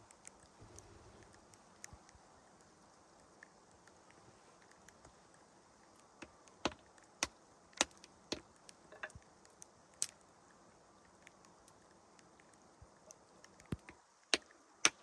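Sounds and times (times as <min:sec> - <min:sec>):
faint steady hiss: 0:00.0 - 0:15.0
sharp irregular knocks and clicks: 0:06.2 - 0:09.2, 0:13.6 - 0:15.0.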